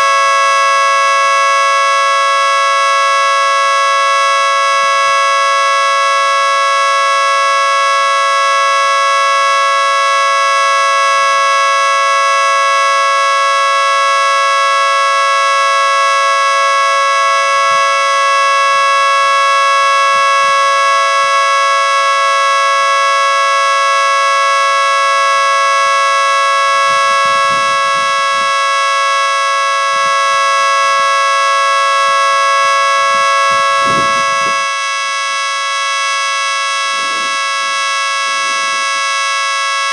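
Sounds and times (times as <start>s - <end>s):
three-tone siren steady chord: 0.0s - 39.9s.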